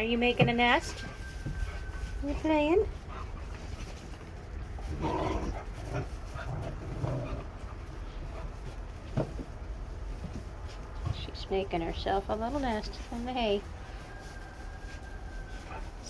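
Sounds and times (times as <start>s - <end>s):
rustling in hay: 0.0s - 16.0s
puppies panting: 0.2s - 9.1s.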